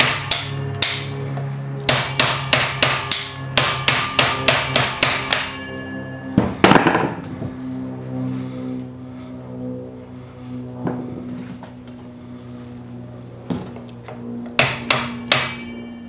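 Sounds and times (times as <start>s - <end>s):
hammer striking metal: 0.0s - 1.2s, 1.9s - 7.2s, 14.6s - 16.0s.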